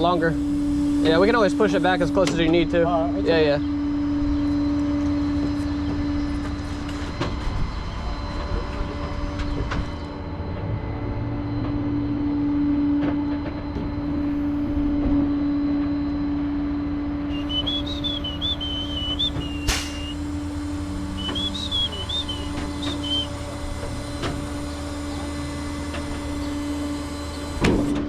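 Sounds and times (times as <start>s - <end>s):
truck engine idling: 17.0s - 27.6s
high warbling whistle: 17.3s - 23.6s
sharp click: 19.4s - 20.2s.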